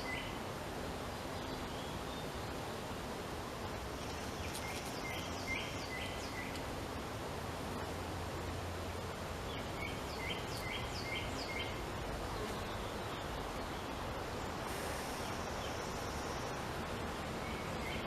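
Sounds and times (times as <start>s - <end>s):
songbird singing: 0.0s - 0.4s, 1.2s - 2.8s, 4.0s - 6.7s, 8.8s - 18.0s
outdoor background noise: 0.0s - 18.0s.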